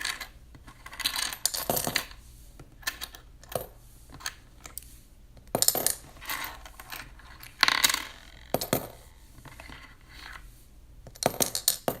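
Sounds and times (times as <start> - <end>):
coins rattling in piggy bank: 0.0 - 2.2, 5.6 - 10.4, 11.2 - 12.0.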